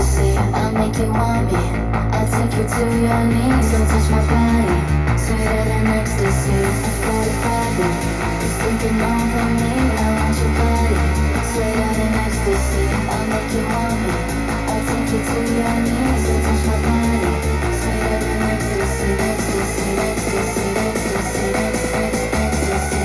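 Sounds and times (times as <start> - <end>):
rock music through speaker: 0.0 - 23.0.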